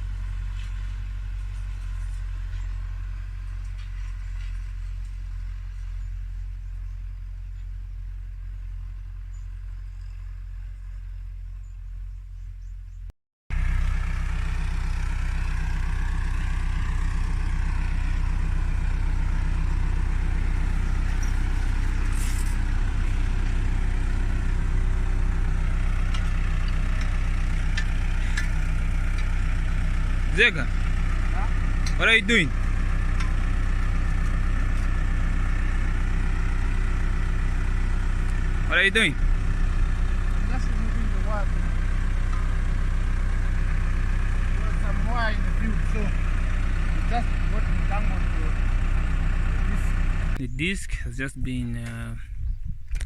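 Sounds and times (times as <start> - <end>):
tractor engine rumbling: 0.0 - 53.0.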